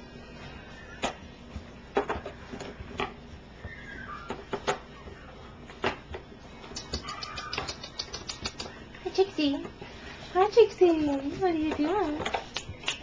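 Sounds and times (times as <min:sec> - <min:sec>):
puppy squeak: 0:03.6 - 0:04.4, 0:06.8 - 0:08.8
puppy whine: 0:03.6 - 0:05.6, 0:06.7 - 0:08.9
claw scratches: 0:06.6 - 0:08.9.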